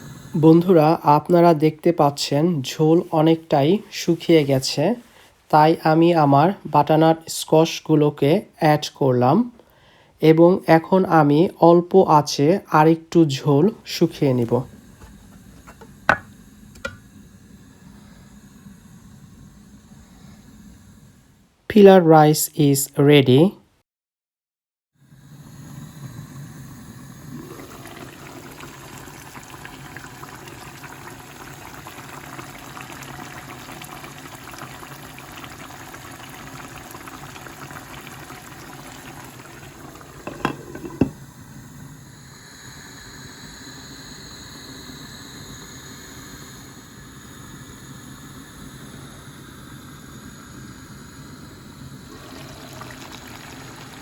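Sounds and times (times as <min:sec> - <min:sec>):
utensil knocking on pan: 0:15.6 - 0:17.0, 0:40.2 - 0:41.2
sauce bubbling in a pan: 0:25.0 - 0:46.6, 0:48.3 - 0:54.0.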